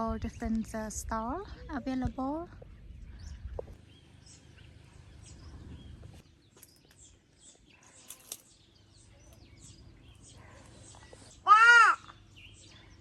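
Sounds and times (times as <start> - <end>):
birds chirping and calling: 0.0 - 13.0
low background rumble: 0.0 - 13.0.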